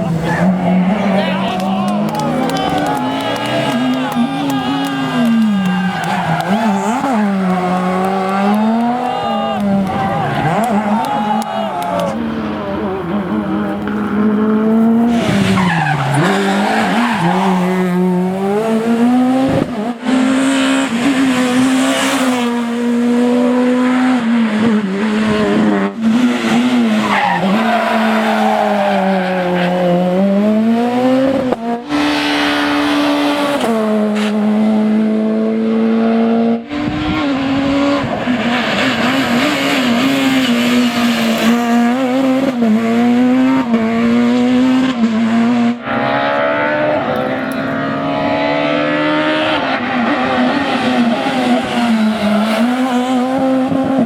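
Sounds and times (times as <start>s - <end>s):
tyres squealing: 0.0s - 12.2s, 15.1s - 17.8s
rally car engines revving: 0.0s - 54.0s.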